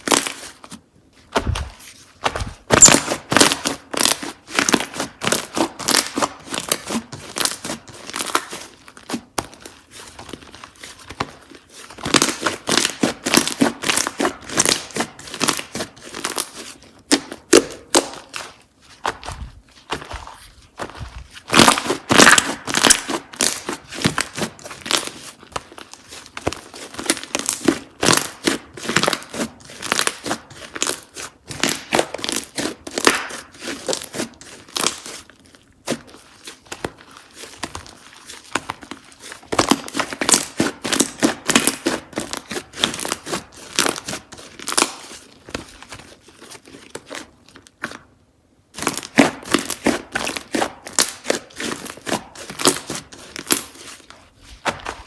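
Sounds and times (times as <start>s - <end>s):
slime squishing and popping: 1.3s - 8.7s, 12.0s - 20.1s, 20.8s - 35.3s, 39.4s - 45.1s, 48.8s - 53.7s.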